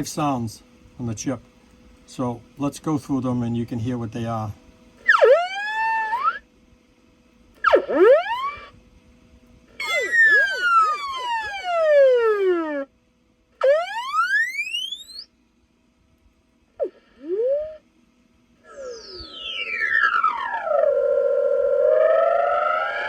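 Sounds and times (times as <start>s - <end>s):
electronic swooping sound effects: 18.7s - 21.0s.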